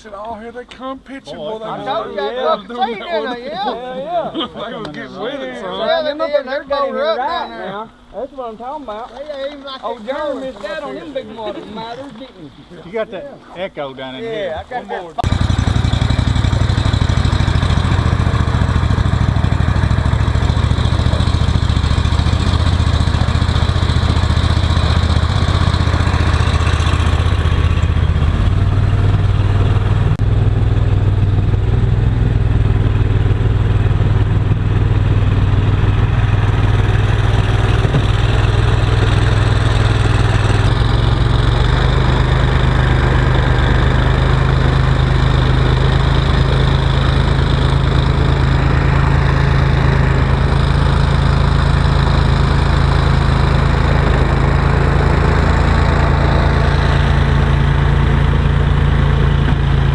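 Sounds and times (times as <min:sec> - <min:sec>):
boat motor running: 0:15.2 - 0:59.9.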